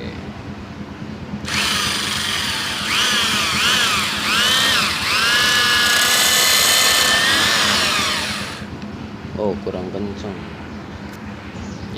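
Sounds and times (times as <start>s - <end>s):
electric drill motor whining: 1.4s - 8.7s.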